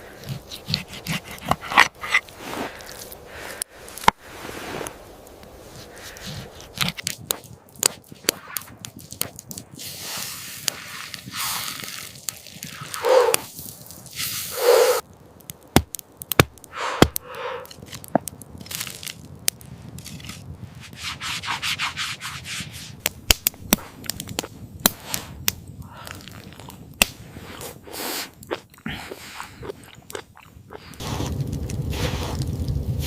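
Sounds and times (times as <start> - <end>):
rubbing and scraping: 0.1 - 2.9, 20.0 - 23.0.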